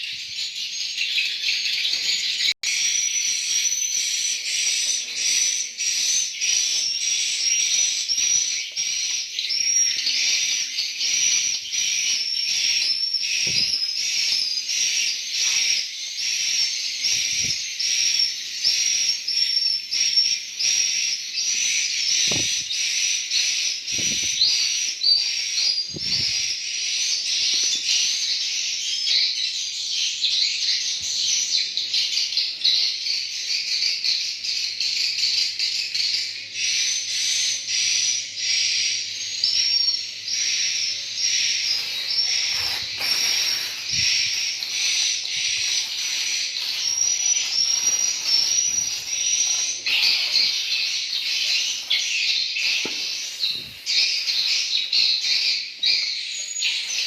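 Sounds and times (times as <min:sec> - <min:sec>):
swiftlets twittering: 0:41.3 - 0:55.7.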